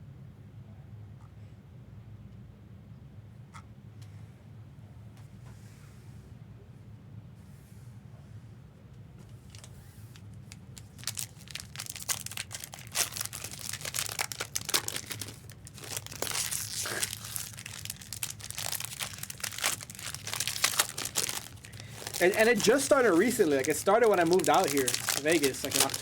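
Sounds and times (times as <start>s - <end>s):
steady low hum: 0.0s - 26.0s
card wrappers tearing and crinkling: 10.2s - 26.0s.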